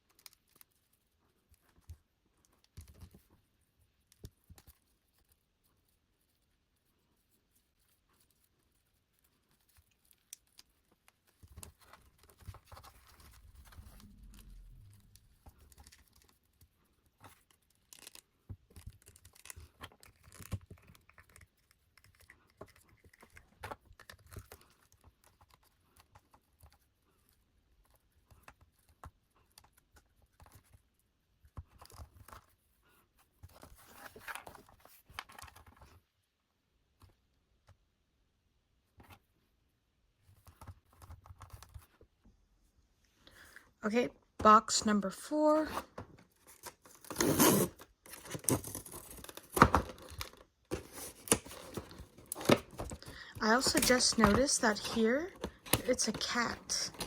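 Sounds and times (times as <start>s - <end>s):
packaging rustling and tearing: 46.3s - 57.0s.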